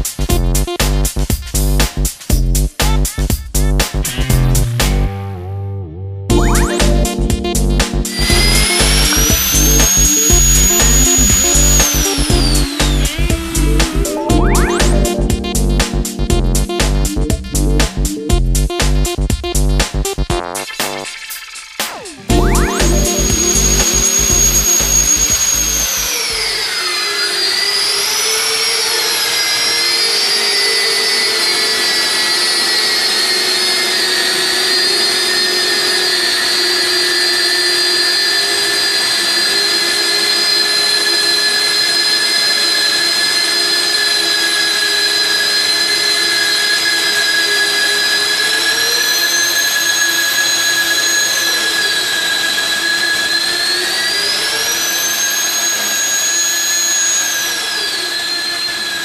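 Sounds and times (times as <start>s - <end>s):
drill whining while boring steel: 8.1s - 14.2s, 22.8s - 59.0s.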